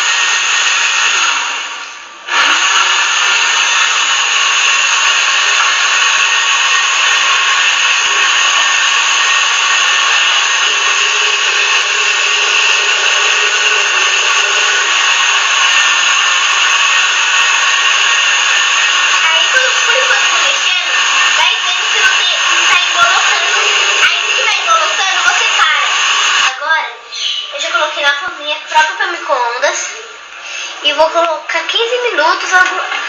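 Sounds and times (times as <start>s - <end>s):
electric blender running: 0.0s - 26.7s, 27.6s - 33.0s.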